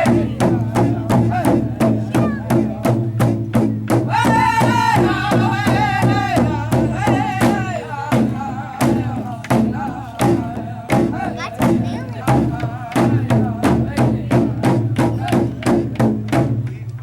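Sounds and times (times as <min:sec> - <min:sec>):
drum beaten in steady pulse: 0:00.0 - 0:17.0
person singing: 0:04.1 - 0:13.4.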